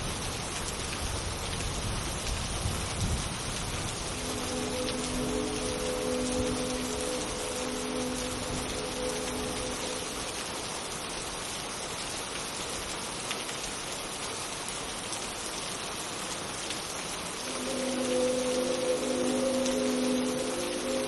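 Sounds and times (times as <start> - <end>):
rain hiss: 0.0 - 21.0
synthesized train horn chord: 4.1 - 10.3, 17.4 - 21.0.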